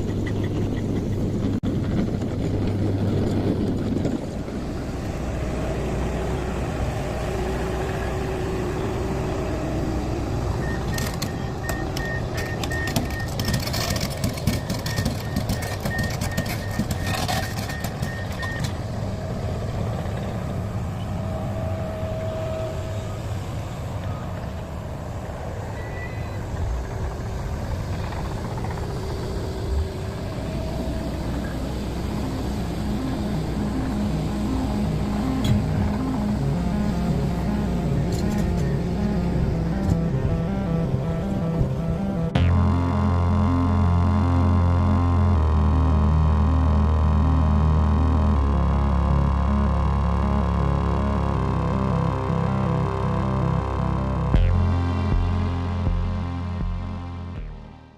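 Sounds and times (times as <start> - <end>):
excavator diesel engine running: 0.0 - 57.9
travel alarm beeping rapidly: 10.6 - 18.7.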